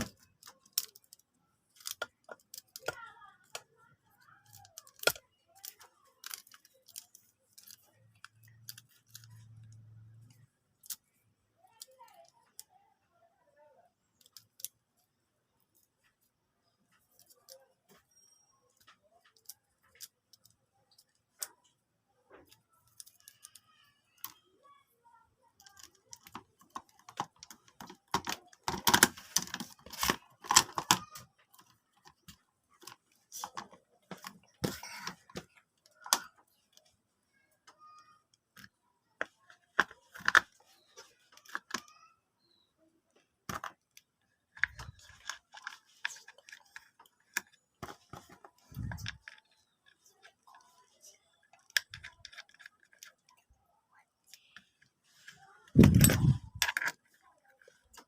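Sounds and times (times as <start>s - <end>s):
small objects clicking and rattling: 0.0s - 12.8s, 14.1s - 14.8s, 16.6s - 24.8s, 25.4s - 36.9s, 43.4s - 53.6s, 55.4s - 58.0s.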